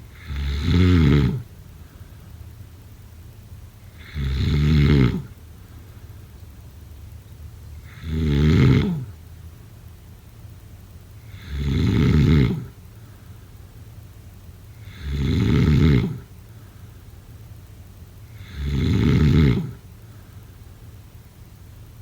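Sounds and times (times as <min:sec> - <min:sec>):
person snoring: 0:00.1 - 0:01.4, 0:04.0 - 0:05.3.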